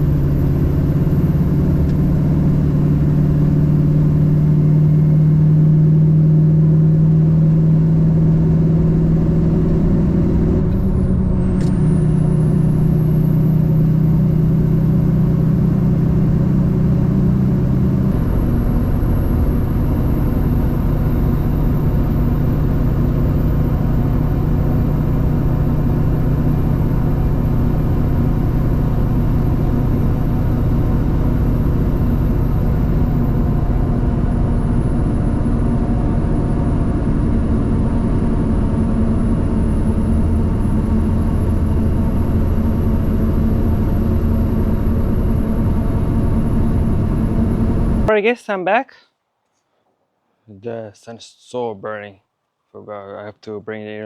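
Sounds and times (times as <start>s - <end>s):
road noise: 0.0s - 48.6s
truck engine drone: 0.0s - 48.9s.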